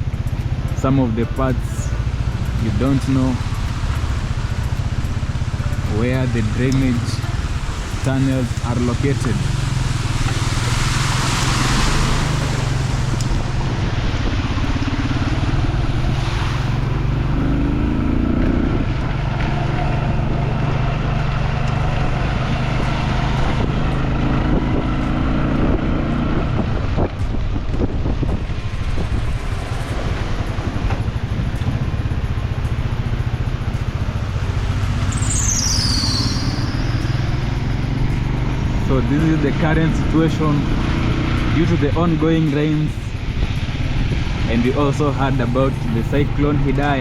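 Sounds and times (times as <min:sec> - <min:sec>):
car engine and road rumble: 0:00.0 - 0:47.0
wet tyres hissing on water: 0:01.6 - 0:17.8, 0:29.3 - 0:39.6
falling whistle: 0:35.0 - 0:37.4.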